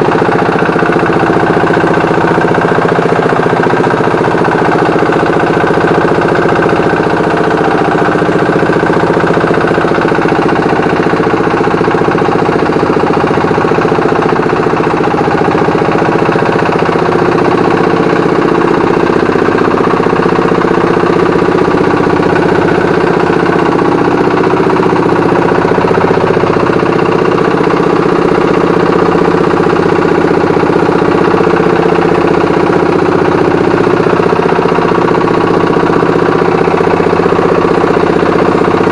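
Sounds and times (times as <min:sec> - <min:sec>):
boat engine running: 0:00.0 - 0:38.9.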